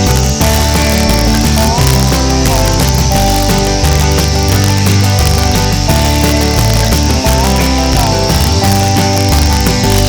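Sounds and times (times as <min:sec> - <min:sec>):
guitar tune: 0:00.0 - 0:10.0.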